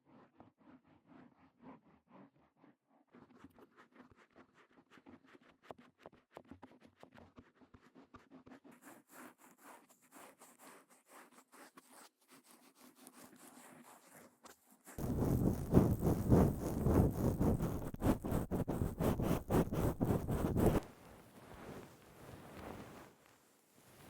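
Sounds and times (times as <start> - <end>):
ear-cleaning tool scratching: 15.0 - 20.8.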